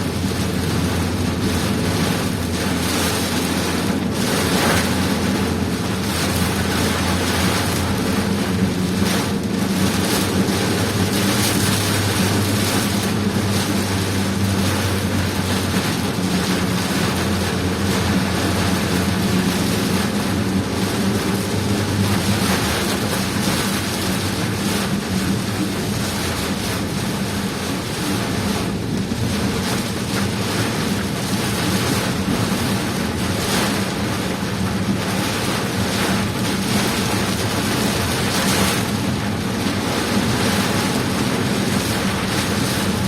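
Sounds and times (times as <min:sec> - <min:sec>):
heavy rain: 0:00.0 - 0:43.0
low engine hum: 0:00.0 - 0:43.0
road noise: 0:00.0 - 0:43.0.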